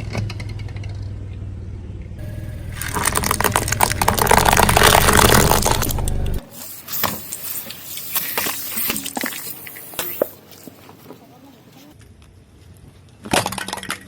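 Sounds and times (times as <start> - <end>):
car engine rumble: 2.2 - 6.5.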